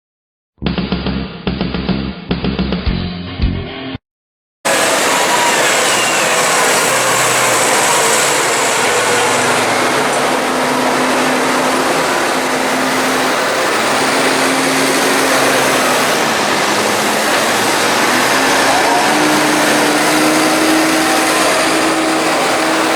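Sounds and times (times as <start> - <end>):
tractor engine running: 4.7 - 22.9.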